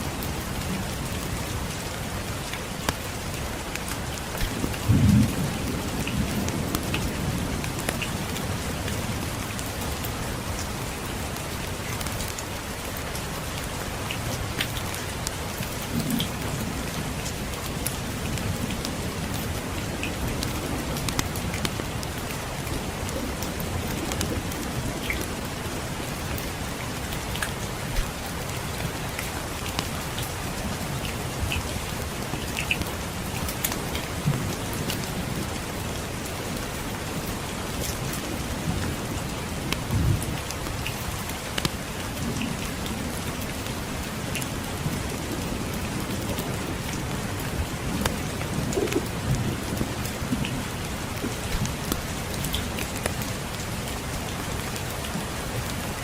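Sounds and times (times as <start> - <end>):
steady rainfall: 0.0 - 56.0
distant thunder rumbling: 4.4 - 7.8.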